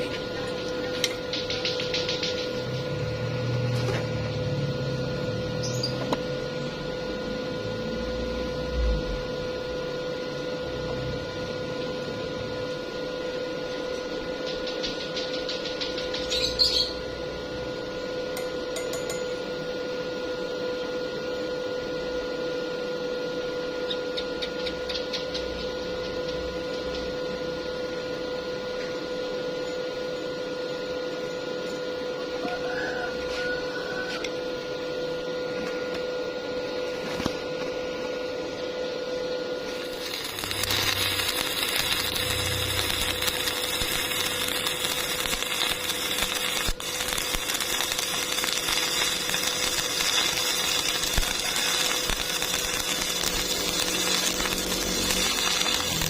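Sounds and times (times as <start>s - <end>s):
steady machine hum: 0.0s - 56.0s.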